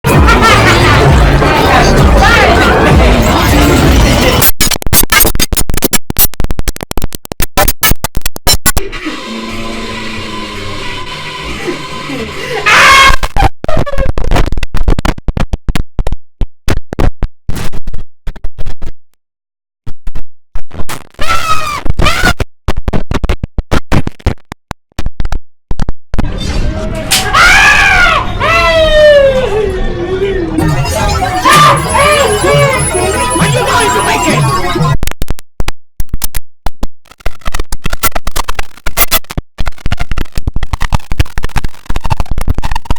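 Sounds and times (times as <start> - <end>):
glitchy stuttering computer sound: 0.1 - 15.9, 30.6 - 35.3, 37.0 - 42.9
stuttering processed shutdown chime: 30.6 - 35.0.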